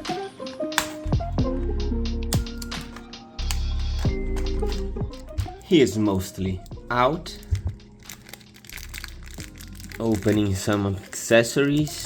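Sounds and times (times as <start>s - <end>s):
drum beat with deep kicks: 0.8s - 1.6s, 2.2s - 3.0s.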